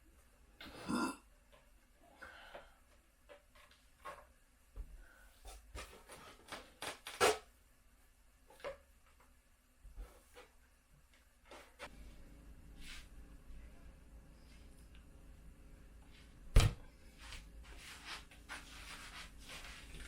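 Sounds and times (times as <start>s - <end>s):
scrape: 12.8s - 13.1s, 17.2s - 20.0s.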